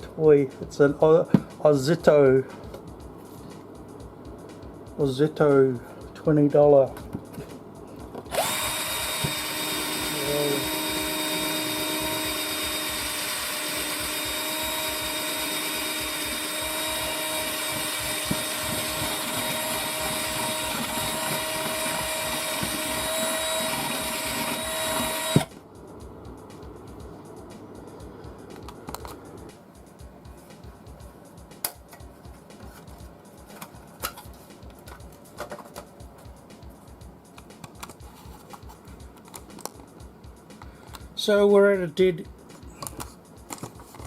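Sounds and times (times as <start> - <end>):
drill whining: 8.3 - 25.5.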